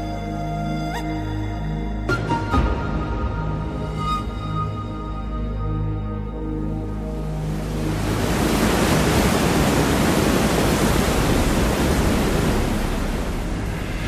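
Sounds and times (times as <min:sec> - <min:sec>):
waterfall rushing: 0:07.3 - 0:14.0.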